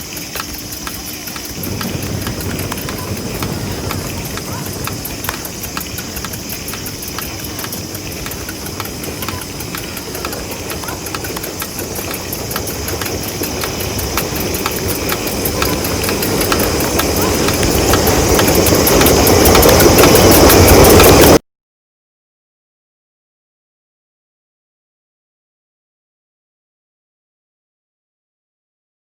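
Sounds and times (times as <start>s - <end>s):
train rumbling and clicking: 0.0s - 21.4s.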